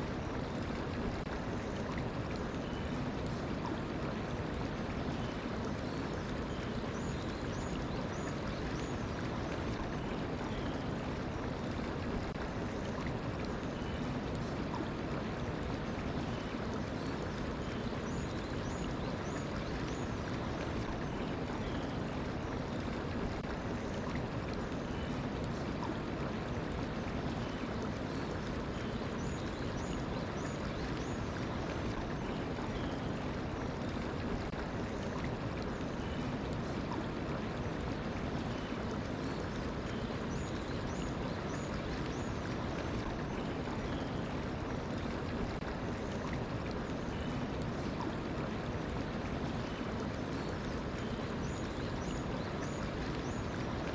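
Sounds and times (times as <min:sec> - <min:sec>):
mountain stream flowing: 0:00.0 - 0:53.9.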